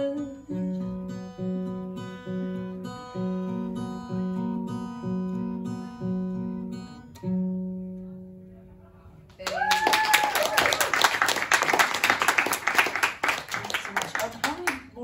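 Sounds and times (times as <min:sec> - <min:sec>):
acoustic guitar strumming: 0:00.0 - 0:08.6.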